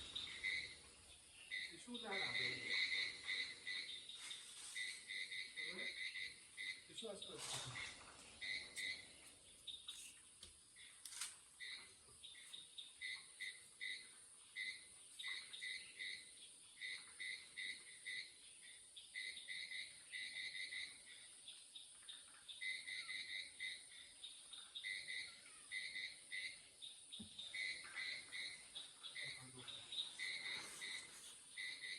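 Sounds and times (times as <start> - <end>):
frog calls: 0.0 - 0.8, 1.5 - 4.0, 5.1 - 6.9, 7.8 - 9.1, 19.2 - 21.2, 22.6 - 24.1, 24.8 - 26.6, 27.4 - 31.9.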